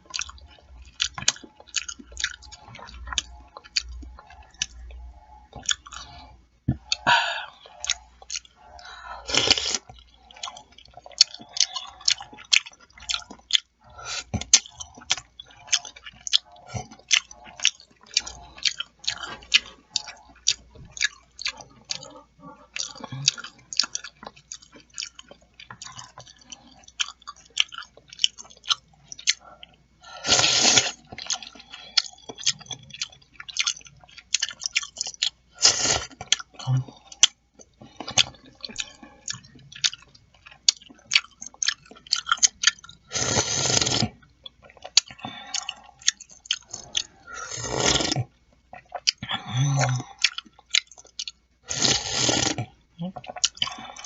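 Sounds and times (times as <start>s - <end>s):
wet chewing and smacking: 0.0s - 54.0s
slurping soup: 30.2s - 32.8s, 35.6s - 36.3s, 43.1s - 44.2s, 46.6s - 48.3s, 51.7s - 52.7s.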